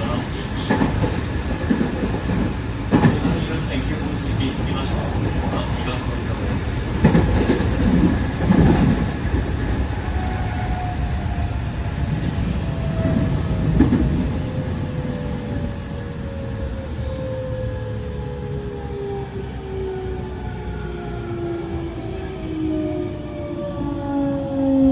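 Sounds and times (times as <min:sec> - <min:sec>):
wheel clatter over rail joints: 0:00.1 - 0:09.8.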